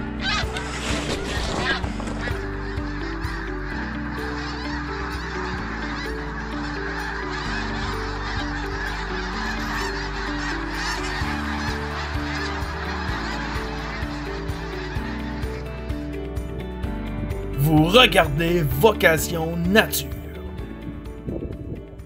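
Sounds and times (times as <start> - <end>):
geese honking: 0.0 - 20.3
background music with beat: 8.8 - 21.2.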